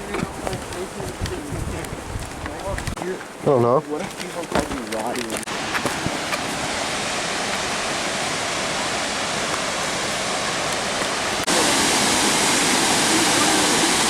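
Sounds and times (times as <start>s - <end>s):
waterfall rushing: 5.4s - 14.0s.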